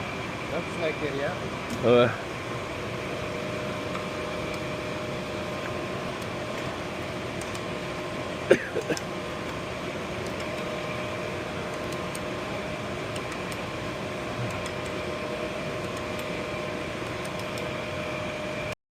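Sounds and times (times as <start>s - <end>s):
electric motor humming: 0.0s - 18.7s.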